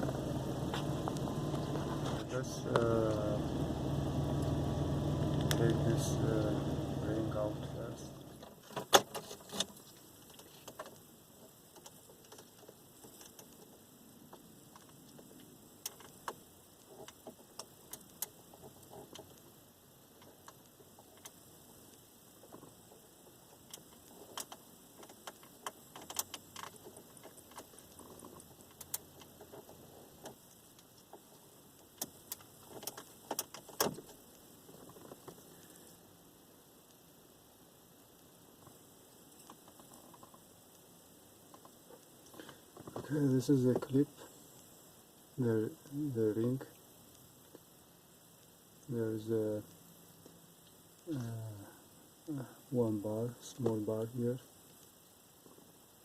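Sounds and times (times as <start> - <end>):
small clicks and taps: 8.5 - 19.5, 23.5 - 35.8, 41.5 - 43.0.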